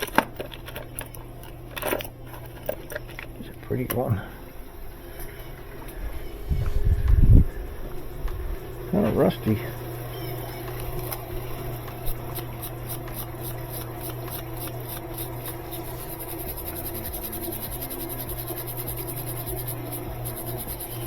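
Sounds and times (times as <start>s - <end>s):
steady low hum: 0.0s - 21.0s
scratching strokes on metal bolt: 12.0s - 21.0s.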